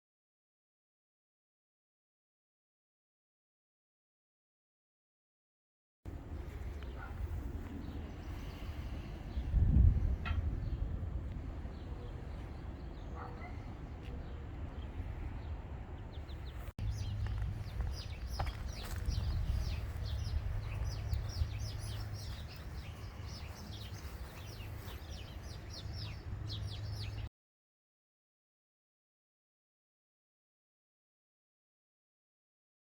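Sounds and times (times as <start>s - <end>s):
steady low rumble: 6.1s - 27.2s
birds chirping: 6.1s - 27.3s.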